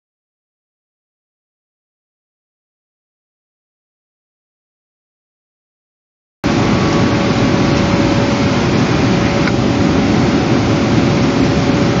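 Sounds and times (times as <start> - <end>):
electrical hum: 6.4 - 12.0
wind rumbling on microphone: 6.4 - 12.0.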